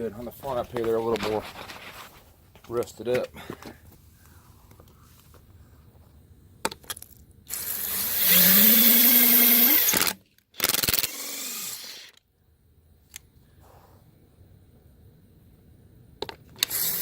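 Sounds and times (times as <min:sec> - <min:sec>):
impact gun spinning: 0:07.0 - 0:12.2, 0:16.6 - 0:17.0.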